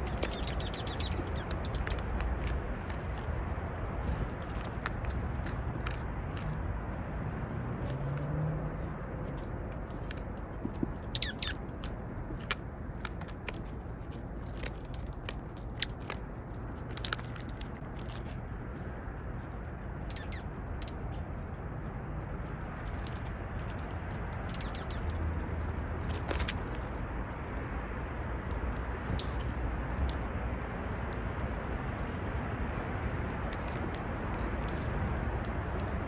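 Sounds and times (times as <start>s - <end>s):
birds calling with high ticks: 0.0s - 6.6s, 8.6s - 13.8s, 19.8s - 21.7s, 22.6s - 27.0s
low background rumble: 0.0s - 36.0s.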